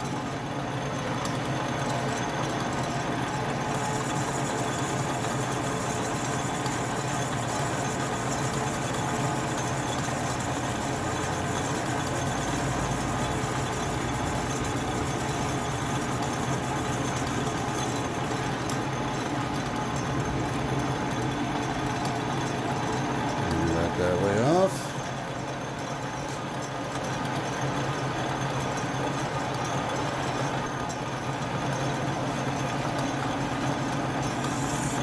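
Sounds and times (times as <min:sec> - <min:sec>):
metal lathe motor humming: 0:03.2 - 0:24.7, 0:31.7 - 0:35.0.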